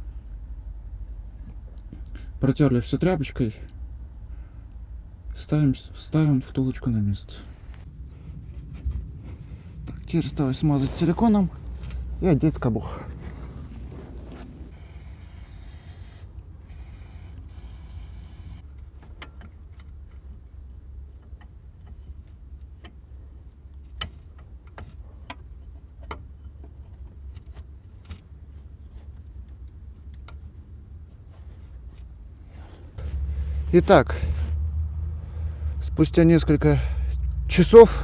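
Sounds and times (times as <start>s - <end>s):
aerosol spraying: 14.7s - 18.6s.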